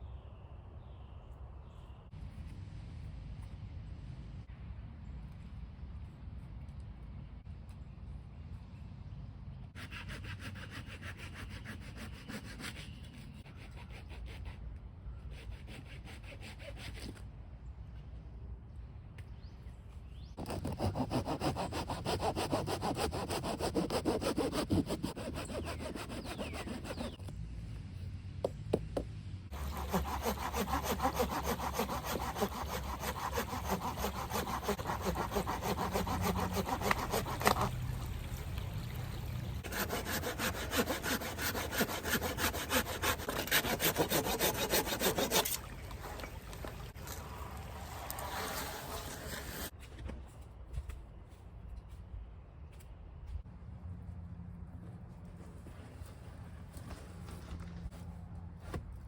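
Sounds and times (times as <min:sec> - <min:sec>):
hand saw cutting a log: 0:09.8 - 0:14.6, 0:15.3 - 0:17.2, 0:20.4 - 0:27.2, 0:29.5 - 0:38.0, 0:39.6 - 0:47.1, 0:47.9 - 0:49.7.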